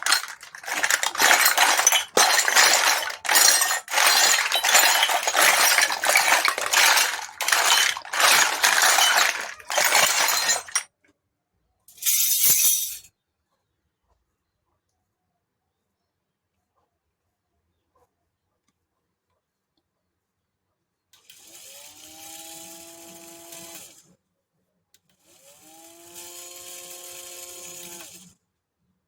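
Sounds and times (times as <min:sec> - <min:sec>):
plastic toy pieces clinking: 0:00.0 - 0:10.8, 0:12.0 - 0:13.0.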